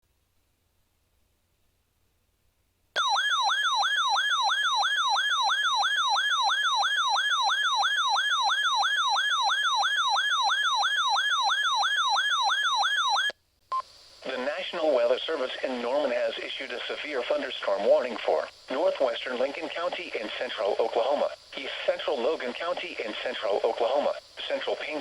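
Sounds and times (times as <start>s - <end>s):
electronic siren alarm wailing: 3.0s - 13.4s.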